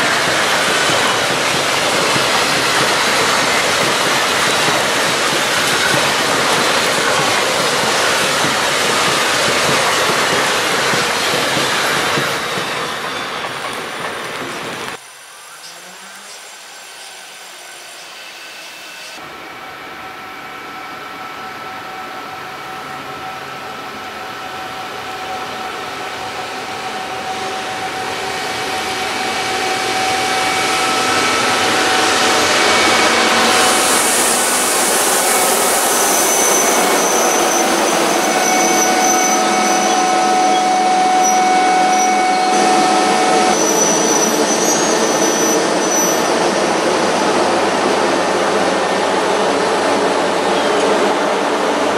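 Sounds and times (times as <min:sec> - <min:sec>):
freight train rolling rumble: 0:00.0 - 0:15.0.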